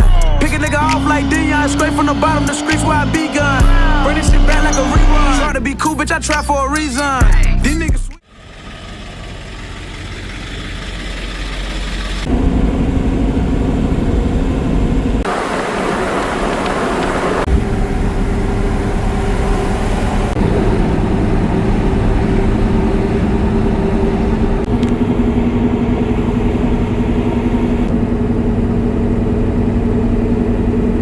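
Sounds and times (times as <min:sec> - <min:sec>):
road noise: 0:00.0 - 0:31.0
vehicle engine drone: 0:00.0 - 0:31.0.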